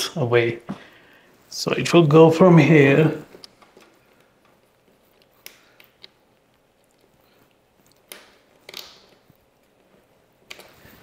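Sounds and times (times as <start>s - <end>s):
cable rustling: 2.8s - 11.0s
cable clips clicking: 7.9s - 9.4s.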